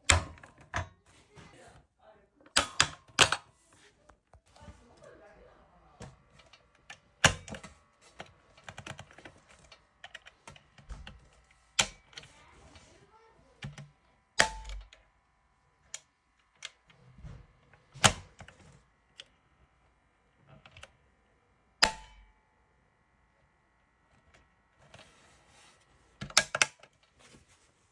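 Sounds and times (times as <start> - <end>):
sharp plastic clicks: 2.5 - 3.5, 13.6 - 15.0.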